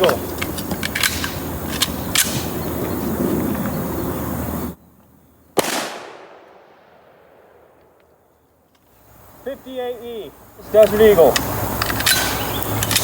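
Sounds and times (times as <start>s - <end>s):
steady rushing background noise: 0.0s - 4.8s
pistol gunshot with echo: 5.6s - 8.0s.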